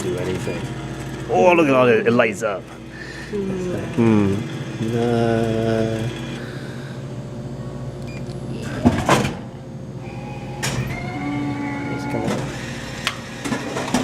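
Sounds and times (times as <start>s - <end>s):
vending machine dispensing: 0.0s - 2.9s, 8.0s - 14.0s
loud machine clunks: 10.6s - 11.3s, 12.1s - 14.0s.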